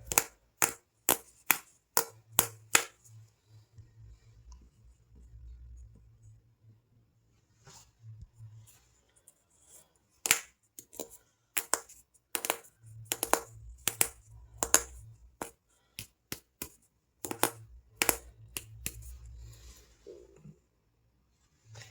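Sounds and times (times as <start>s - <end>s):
soap bars clicking and snapping: 0.0s - 3.0s, 10.3s - 19.0s
faint low hum: 2.2s - 10.1s, 11.2s - 16.0s.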